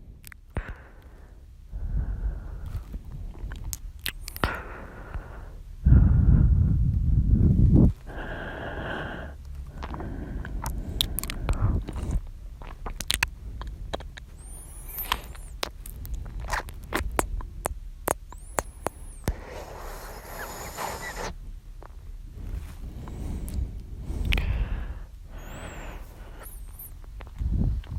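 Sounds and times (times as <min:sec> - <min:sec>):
wet mouth clicks and pops: 0:00.2 - 0:00.8, 0:03.4 - 0:04.6, 0:09.5 - 0:22.0, 0:23.5 - 0:24.6
breath into microphone: 0:04.4 - 0:06.8, 0:19.1 - 0:21.4, 0:22.3 - 0:26.9.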